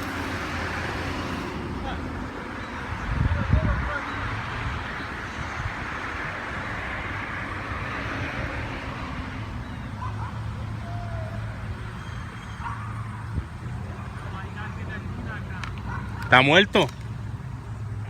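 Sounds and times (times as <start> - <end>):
low engine hum: 0.0 - 3.0
vehicle passing: 0.0 - 18.0.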